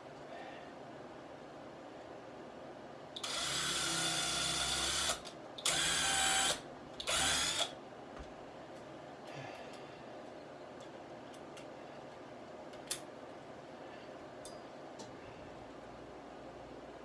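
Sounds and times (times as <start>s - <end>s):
power drill driving screw into wood: 3.2s - 7.8s.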